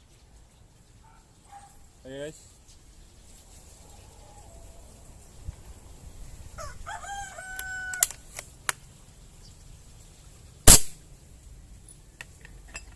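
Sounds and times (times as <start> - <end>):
rooster crowing: 6.6 - 8.2.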